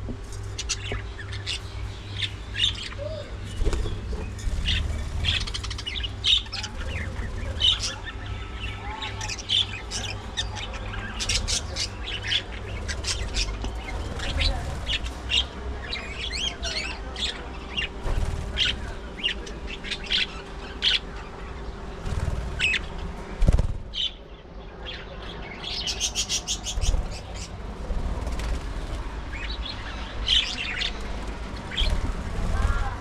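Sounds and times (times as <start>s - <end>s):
budgerigars chirping: 0.6s - 21.7s, 25.6s - 27.5s.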